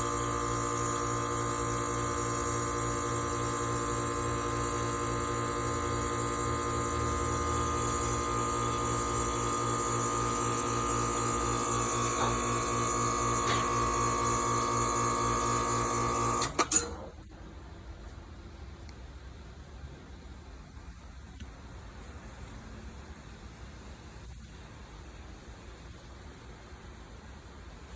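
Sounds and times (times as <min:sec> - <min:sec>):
air conditioner humming: 0:00.0 - 0:20.8.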